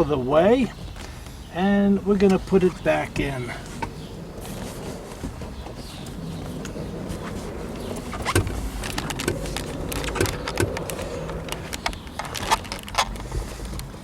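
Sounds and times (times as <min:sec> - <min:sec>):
seat cushion knocks and thuds: 0:03.7 - 0:12.1.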